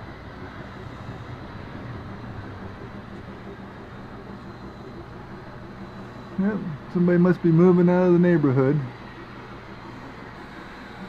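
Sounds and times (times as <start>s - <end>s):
model train running on track: 0.0s - 11.0s.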